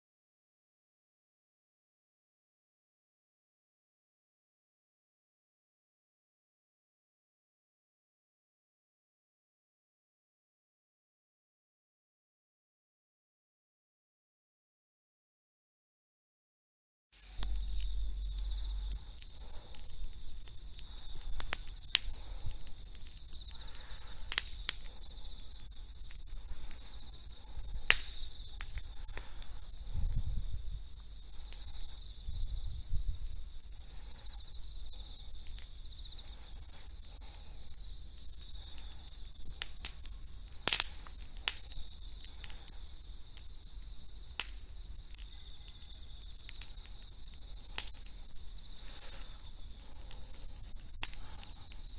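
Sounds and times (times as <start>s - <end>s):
crickets trilling: 17.2s - 51.9s
campfire crackling and popping: 17.3s - 51.9s.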